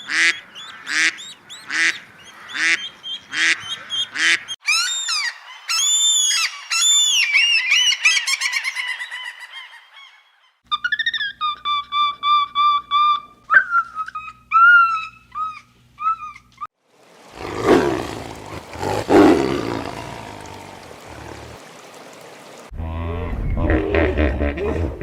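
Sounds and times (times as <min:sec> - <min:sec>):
high whistle-like animal calls: 0:04.6 - 0:08.6
large animal roaring: 0:17.3 - 0:21.6.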